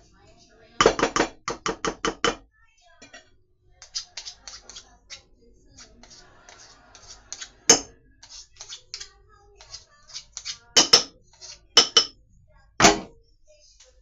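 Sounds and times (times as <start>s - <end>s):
utensils tapping on dishes: 0.8s - 2.4s, 3.0s - 5.2s, 5.8s - 12.2s, 12.8s - 13.1s.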